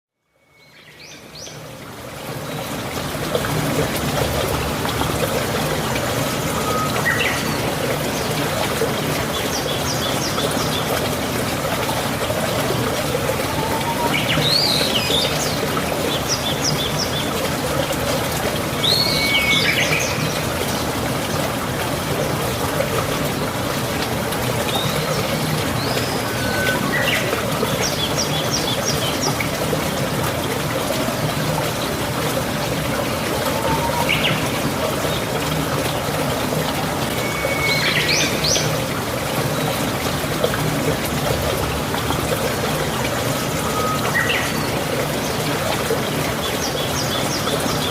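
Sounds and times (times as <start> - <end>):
stream running water: 0.2 - 47.9.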